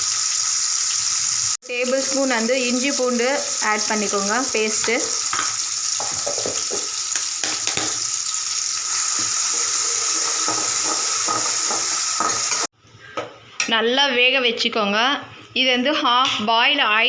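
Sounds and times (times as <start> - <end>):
food sizzling in hot oil: 0.0 - 12.7
spatula scraping a pan: 9.0 - 12.7.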